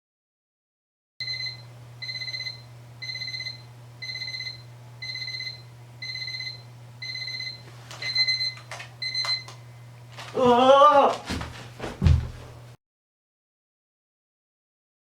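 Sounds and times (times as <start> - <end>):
alarm clock beeping: 1.2 - 9.5
low steady hum: 1.2 - 12.8.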